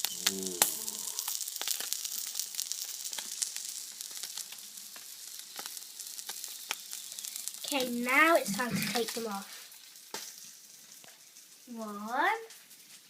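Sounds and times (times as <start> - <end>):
spitting fat popping: 0.0 - 3.5, 7.6 - 9.4
food sizzling in a hot pan: 0.0 - 13.0.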